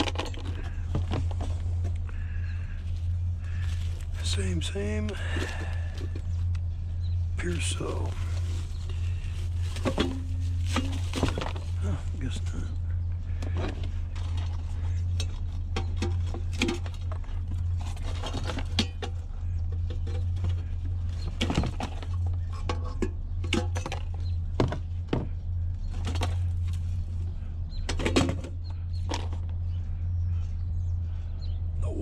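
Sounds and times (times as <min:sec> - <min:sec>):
scrap metal clinks and knocks: 0:00.0 - 0:02.0, 0:13.5 - 0:20.6
steady low hum: 0:00.0 - 0:32.0.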